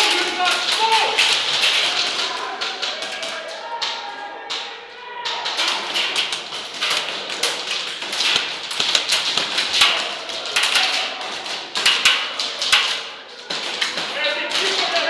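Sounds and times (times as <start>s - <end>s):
pellets striking surfaces: 0.0s - 15.0s
airsoft guns firing: 5.3s - 15.0s.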